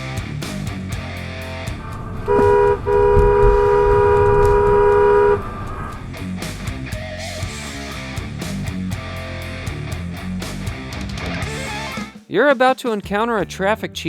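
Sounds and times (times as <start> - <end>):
rock guitar music: 0.0 - 14.0
car horn honking: 2.3 - 5.6.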